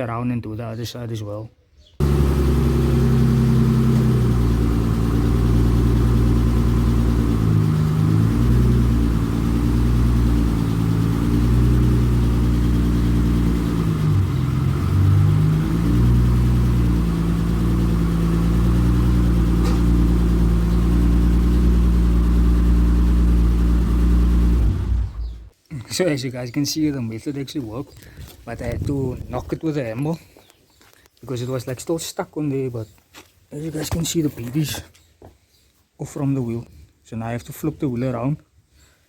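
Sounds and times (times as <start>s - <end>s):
car engine revving: 2.0s - 25.5s.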